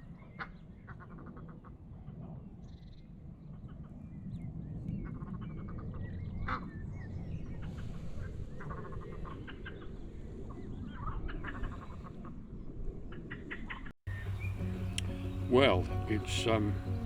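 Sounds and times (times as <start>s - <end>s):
ducks and waterbirds calling: 0.0s - 4.0s, 4.9s - 12.4s, 13.1s - 17.0s
steady low rumble: 14.1s - 17.0s.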